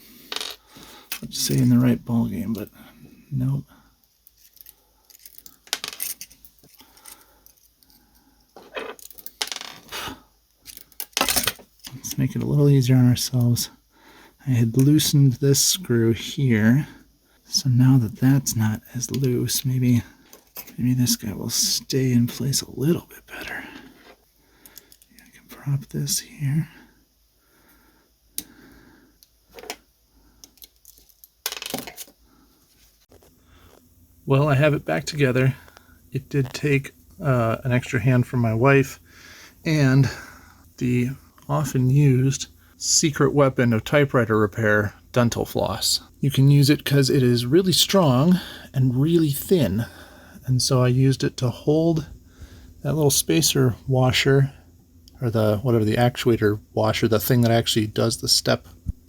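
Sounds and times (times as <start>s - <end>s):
small metal parts clicking and rattling: 4.2s - 8.0s, 8.6s - 9.9s, 10.6s - 11.9s, 30.4s - 32.1s.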